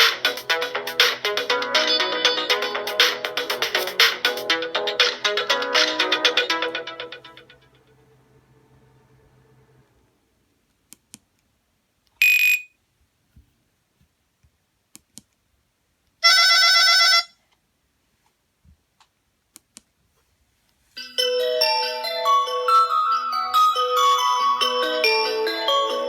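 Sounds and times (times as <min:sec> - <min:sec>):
ringtone melody: 0:00.0 - 0:08.2, 0:21.0 - 0:26.0
phone beep: 0:12.2 - 0:12.8.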